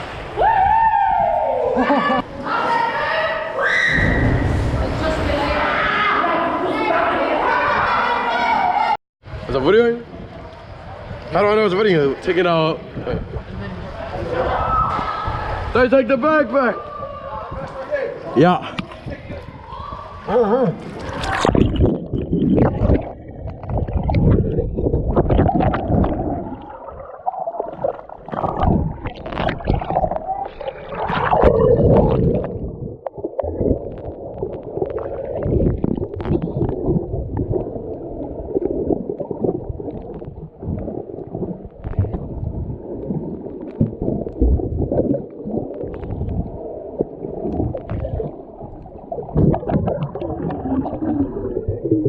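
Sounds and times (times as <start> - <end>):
water gurgling and sloshing: 10.0 - 15.8, 18.8 - 52.0
microphone handling crackle: 31.3 - 37.8.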